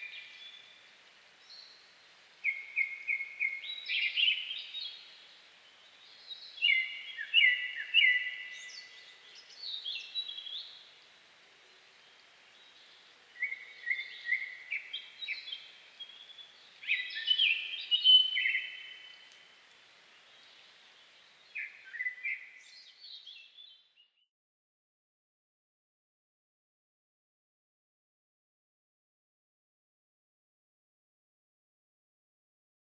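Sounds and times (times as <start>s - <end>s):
songbirds singing: 0.0s - 24.2s.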